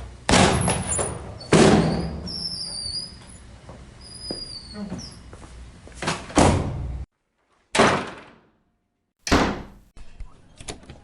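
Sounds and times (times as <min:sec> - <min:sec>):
door slamming shut: 0:00.3 - 0:02.2, 0:06.0 - 0:06.9, 0:07.7 - 0:08.5, 0:09.2 - 0:09.8.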